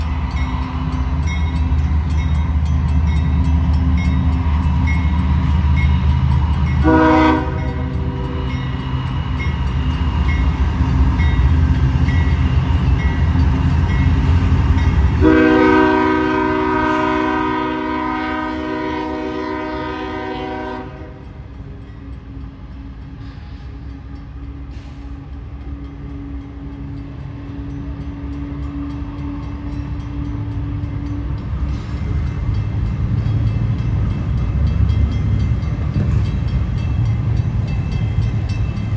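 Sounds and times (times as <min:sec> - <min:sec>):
diesel train engine rumble: 0:00.0 - 0:38.9
train horn blasts: 0:06.6 - 0:08.8, 0:13.6 - 0:21.4.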